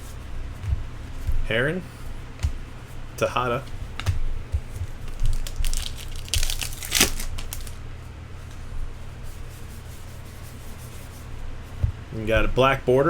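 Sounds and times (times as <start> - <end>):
low steady hum: 0.0 - 13.0
cards and paper packaging rustling: 3.5 - 7.8.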